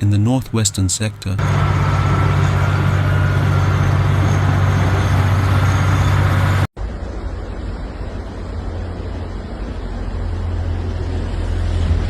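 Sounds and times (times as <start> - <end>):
vehicle engine running: 1.3 - 6.7.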